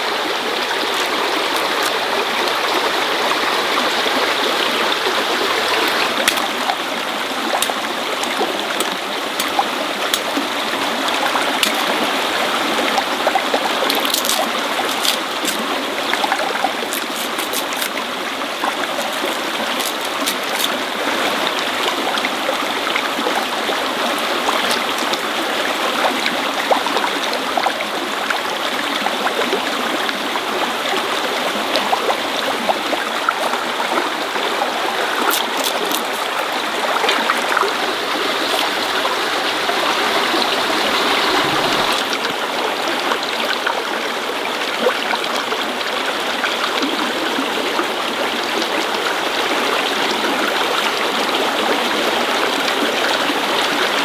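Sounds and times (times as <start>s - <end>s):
water rushing: 0.0s - 54.0s.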